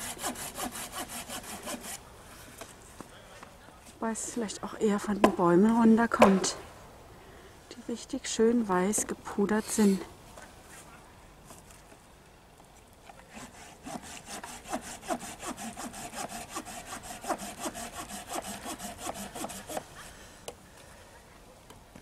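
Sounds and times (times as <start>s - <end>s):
hand saw cutting wood: 0.0s - 2.0s, 13.3s - 19.9s.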